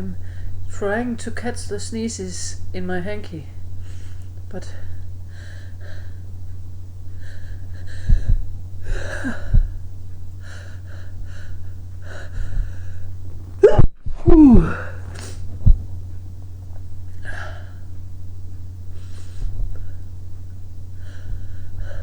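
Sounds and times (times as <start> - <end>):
low hum: 0.0 - 22.0
man gasping breaths: 7.1 - 9.8, 10.4 - 15.6, 21.0 - 22.0
man sneezing: 13.6 - 14.9.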